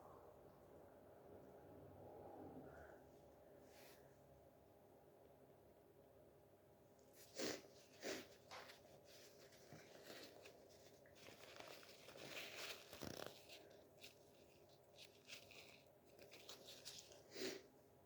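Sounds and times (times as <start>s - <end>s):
person breathing softly: 2.4s - 4.2s
faint rustling: 7.1s - 17.3s.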